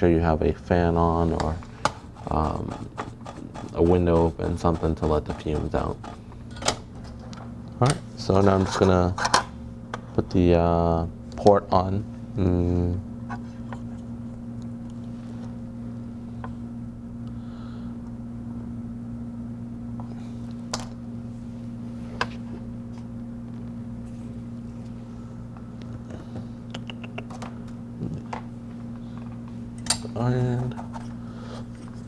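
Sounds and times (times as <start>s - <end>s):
electrical hum of equipment: 0.0s - 32.0s.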